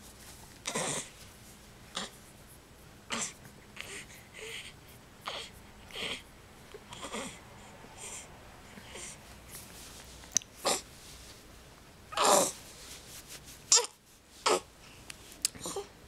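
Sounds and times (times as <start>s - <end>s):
baby breathing and grunting: 0.6s - 1.2s, 3.1s - 6.3s, 6.9s - 9.2s, 10.6s - 10.9s, 12.1s - 12.6s.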